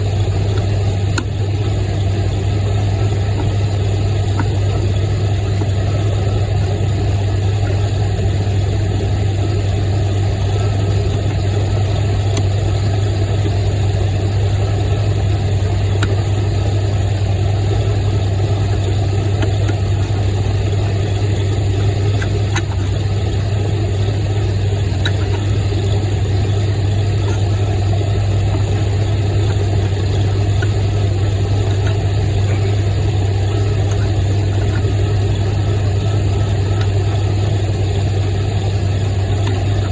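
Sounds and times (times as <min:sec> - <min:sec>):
engine idling: 0:00.0 - 0:39.9
faint metallic ticks: 0:00.4 - 0:01.8, 0:17.7 - 0:39.9.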